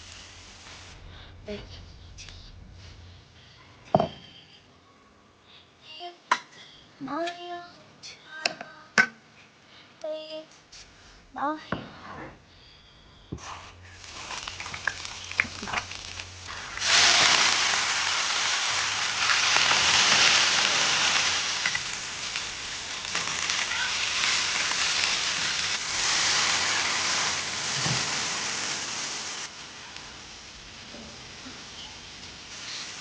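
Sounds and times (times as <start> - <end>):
food sizzling in hot oil: 0.0 - 1.0, 13.8 - 33.0.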